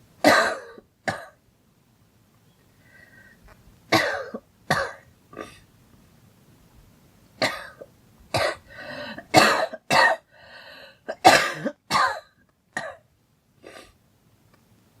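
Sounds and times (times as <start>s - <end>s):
girl coughing: 0.2s - 1.4s, 4.0s - 5.6s, 7.4s - 7.8s, 8.4s - 8.6s, 9.3s - 10.3s, 11.1s - 13.0s
drawn-in breaths: 2.7s - 3.6s, 8.6s - 9.3s, 10.3s - 11.1s.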